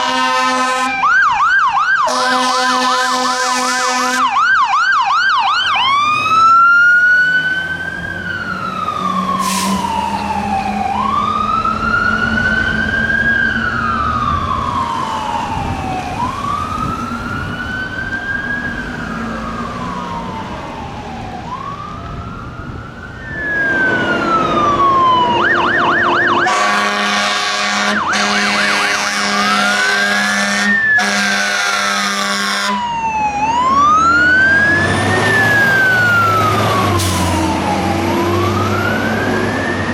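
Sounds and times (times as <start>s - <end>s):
truck air horn blasts: 0.0s - 1.0s, 2.1s - 4.3s, 9.4s - 9.9s, 26.4s - 32.8s
fire truck siren wailing: 0.0s - 39.9s.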